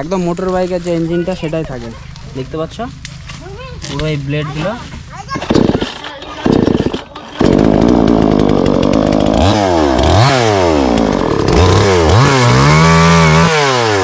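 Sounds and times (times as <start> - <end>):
chainsaw engine revving: 5.4 - 14.0.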